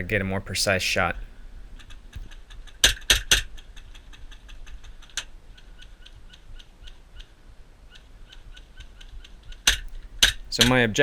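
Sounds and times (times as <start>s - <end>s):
faint regular ticking: 9.8s - 11.0s.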